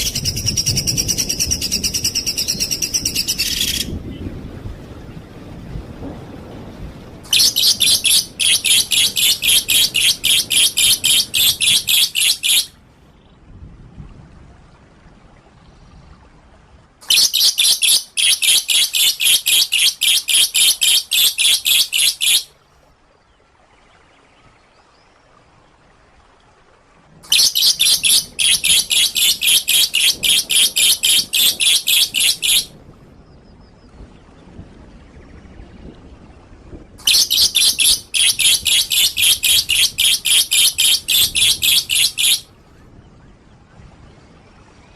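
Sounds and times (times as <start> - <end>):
songbird rapid high notes: 7.3 - 12.7, 17.0 - 22.5, 27.3 - 32.7, 37.0 - 42.5.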